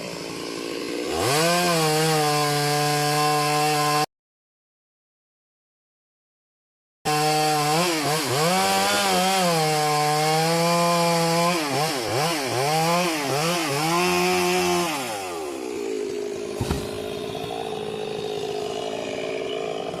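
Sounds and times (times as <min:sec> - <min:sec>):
chainsaw cutting wood: 0:00.0 - 0:04.1, 0:07.1 - 0:20.0
sharp knock: 0:16.6 - 0:17.6.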